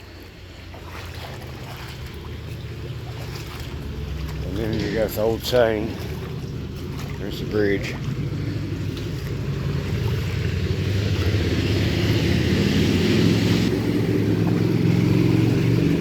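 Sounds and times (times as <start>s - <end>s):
car engine and road rumble: 0.0s - 16.0s.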